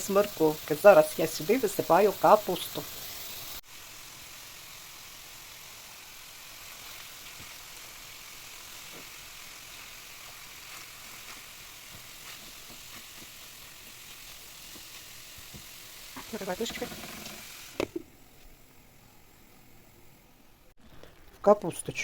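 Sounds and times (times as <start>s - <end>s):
food sizzling in a frying pan: 0.0s - 18.7s
small crackles: 6.3s - 18.6s.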